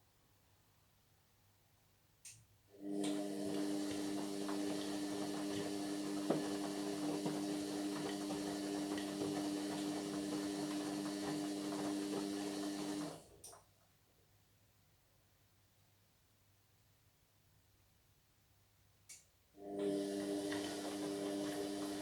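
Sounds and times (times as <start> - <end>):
washing machine running: 2.8 - 13.4, 19.6 - 22.0.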